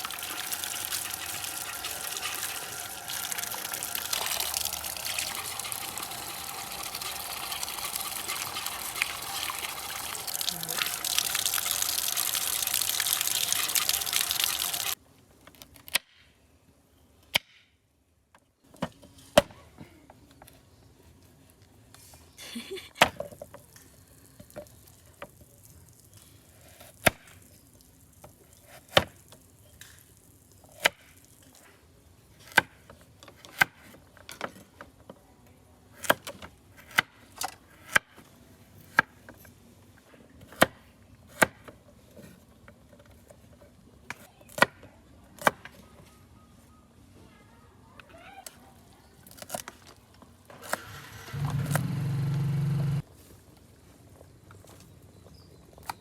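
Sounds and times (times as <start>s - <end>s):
water running from a tap: 0.0s - 15.0s.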